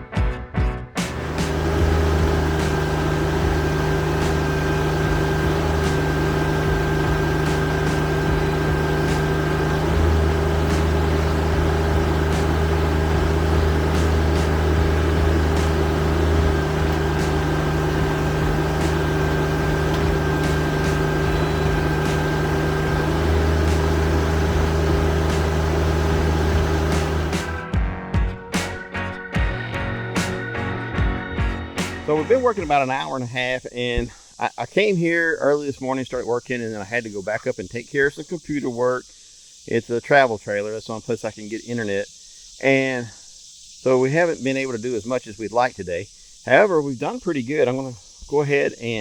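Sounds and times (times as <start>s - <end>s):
tractor diesel engine running: 1.1s - 27.6s, 32.1s - 32.7s.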